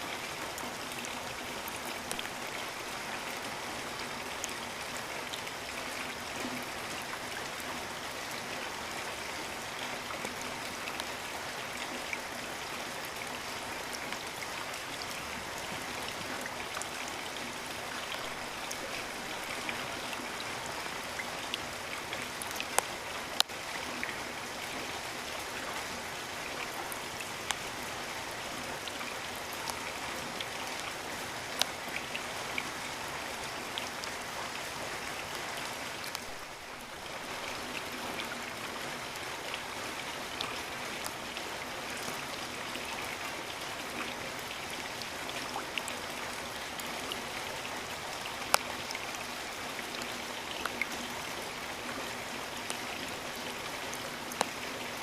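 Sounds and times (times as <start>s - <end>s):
close raindrops striking: 0.0s - 55.0s
steady rain hiss: 0.0s - 55.0s.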